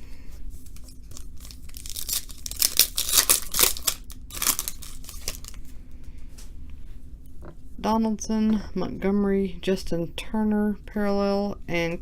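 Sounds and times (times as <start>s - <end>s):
card packs crinkling: 0.6s - 5.7s.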